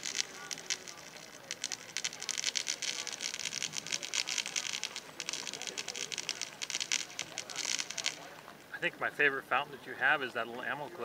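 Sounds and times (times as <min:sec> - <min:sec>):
firework crackles: 0:00.0 - 0:11.0
firework fountain hissing: 0:00.0 - 0:11.0.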